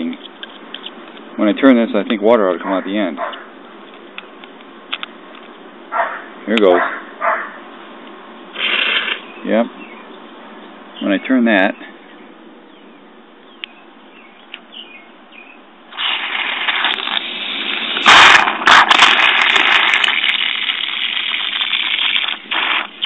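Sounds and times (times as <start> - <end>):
pressurised water rushing and spraying: 15.9 - 23.0.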